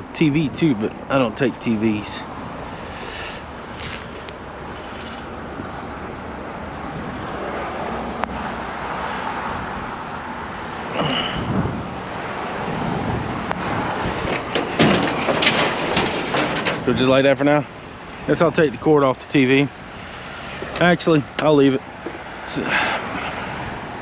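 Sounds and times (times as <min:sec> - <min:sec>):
vehicle engine rumbling: 0:00.0 - 0:24.0
wind on microphone: 0:06.6 - 0:08.4, 0:11.0 - 0:14.9.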